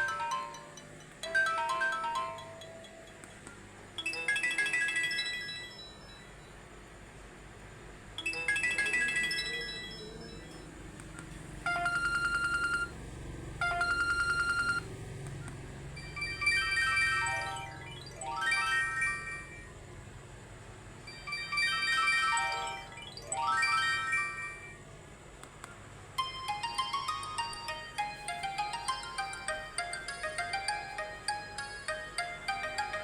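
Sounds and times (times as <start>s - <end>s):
electronic chime ringtones: 8.2s - 10.7s, 11.7s - 12.9s, 13.6s - 14.8s, 16.0s - 19.7s, 21.1s - 24.8s
buzzing phone rings: 8.2s - 10.8s, 11.6s - 13.0s, 13.6s - 19.8s, 21.0s - 24.9s.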